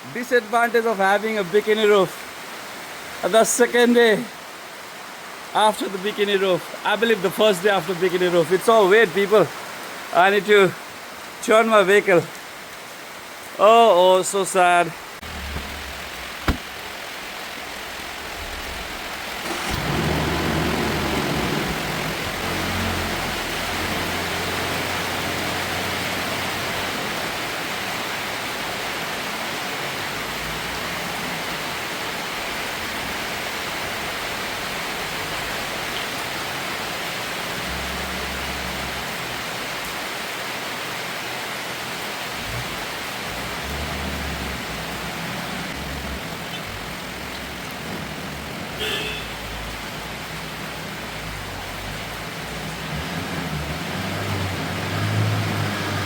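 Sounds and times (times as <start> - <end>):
heavy rain on a car: 15.0 - 56.0.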